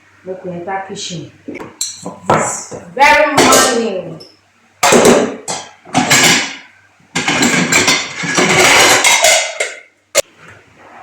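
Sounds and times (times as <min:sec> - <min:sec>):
dishes clattering: 0:03.4 - 0:03.9, 0:04.8 - 0:10.3.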